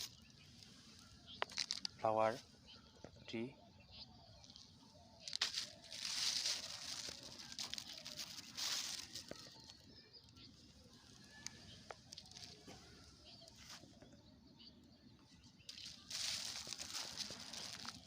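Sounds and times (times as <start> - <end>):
faint bird chirps: 0.0 - 18.0
litter rustling and crinkling: 4.4 - 9.8, 11.0 - 13.1, 15.7 - 18.0.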